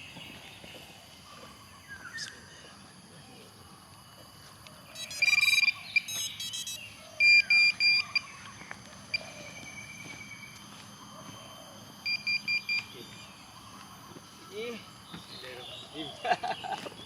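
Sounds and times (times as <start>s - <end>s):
short high electronic beeps: 5.0s - 8.2s
long steady beep: 5.0s - 14.9s.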